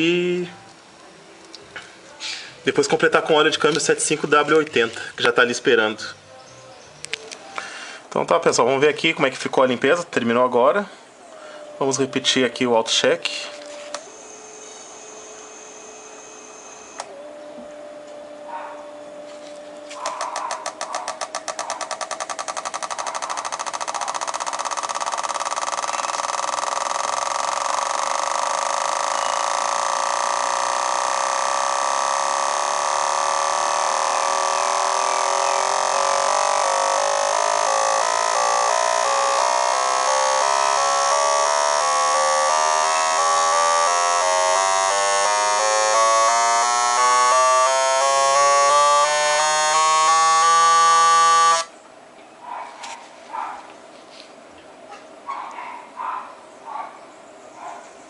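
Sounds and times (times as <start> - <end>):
steady hum: 10.9 - 51.8
fuel injectors clicking rapidly: 20.2 - 28.5.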